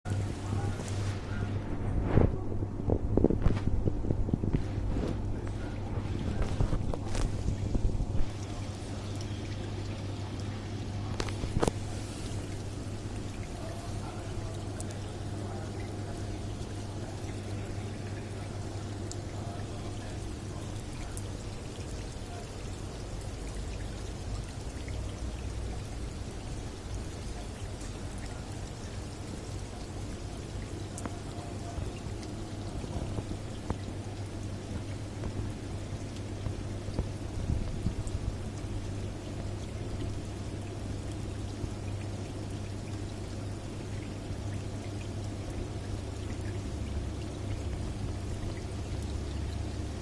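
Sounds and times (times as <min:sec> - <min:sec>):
heavy rain falling: 0:00.1 - 0:42.2.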